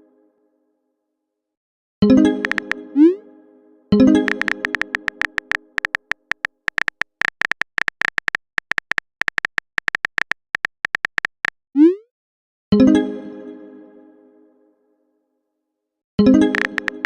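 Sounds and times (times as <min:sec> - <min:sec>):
phone keyboard clicks: 0:02.4 - 0:02.8, 0:04.3 - 0:11.6, 0:16.5 - 0:17.0.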